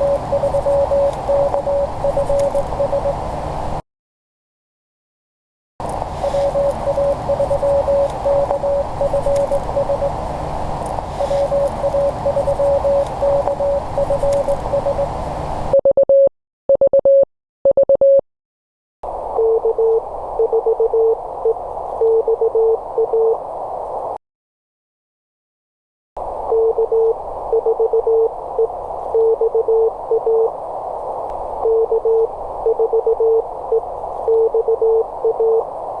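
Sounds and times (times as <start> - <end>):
morse code tones: 0.0 - 3.3, 6.1 - 10.3, 11.0 - 18.2, 31.6 - 35.6
radio band hiss: 0.0 - 3.8, 5.8 - 15.7.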